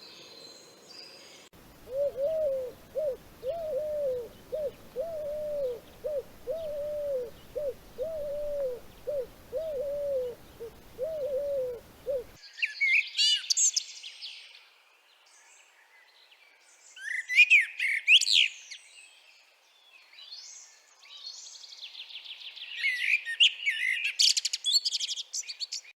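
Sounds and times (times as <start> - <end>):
songbirds chirping and trilling: 0.0 - 14.5
short low bird calls: 1.6 - 12.4.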